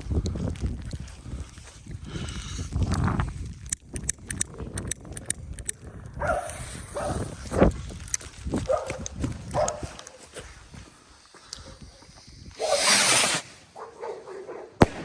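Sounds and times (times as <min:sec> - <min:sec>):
fireworks crackling pops: 0:06.2 - 0:08.2, 0:12.5 - 0:13.7.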